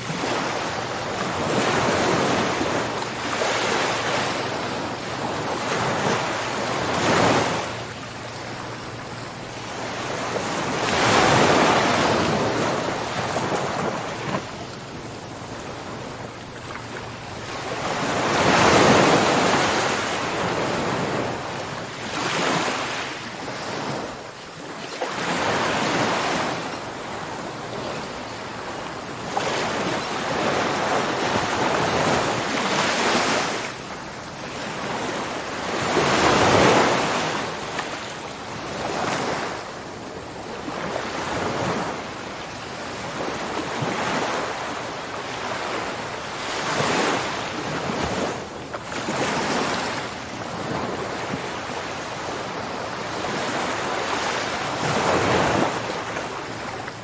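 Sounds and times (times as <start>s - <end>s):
ocean waves rushing and washing: 0.0s - 57.0s.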